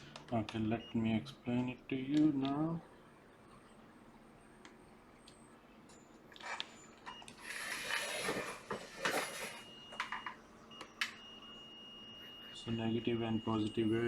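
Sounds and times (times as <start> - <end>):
faint high steady tone: 9.4 - 14.0.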